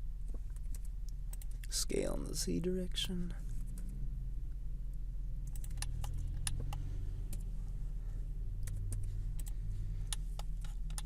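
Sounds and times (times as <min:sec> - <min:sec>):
steady low hum: 0:00.0 - 0:11.0
keyboard and mouse clicks: 0:05.5 - 0:07.5, 0:08.6 - 0:09.5, 0:10.1 - 0:11.0.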